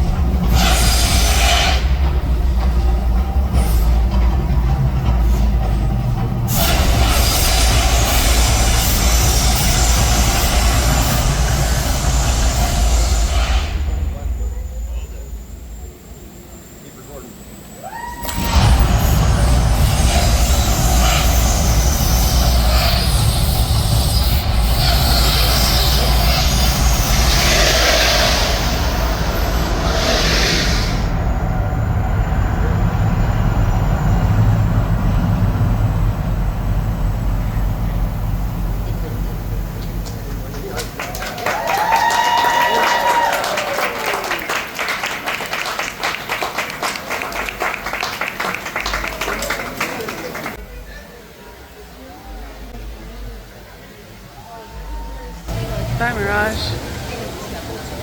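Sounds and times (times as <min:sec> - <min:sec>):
hissing roar: 0:00.0 - 0:02.6, 0:06.5 - 0:50.6
low rumble: 0:00.0 - 0:17.6, 0:18.2 - 0:41.1
crowd applauding: 0:39.6 - 0:50.7.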